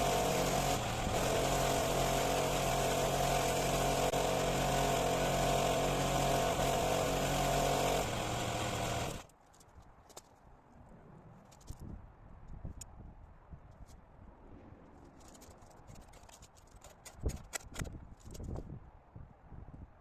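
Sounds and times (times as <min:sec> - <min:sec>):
pressure washer motor hum: 0:00.0 - 0:09.2.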